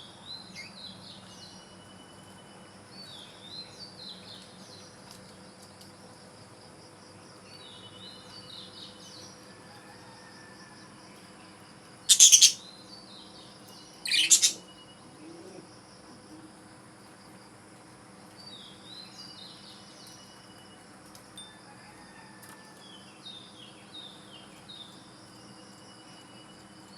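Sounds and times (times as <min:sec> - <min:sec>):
budgerigars chirping and warbling: 0:12.1 - 0:12.6, 0:14.1 - 0:14.6
loud harsh bird squawks: 0:12.1 - 0:12.6, 0:14.1 - 0:14.6.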